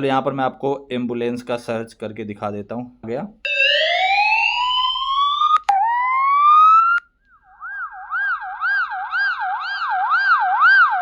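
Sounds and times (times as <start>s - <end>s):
rising siren tone: 3.5s - 11.0s
wailing siren: 3.5s - 11.0s.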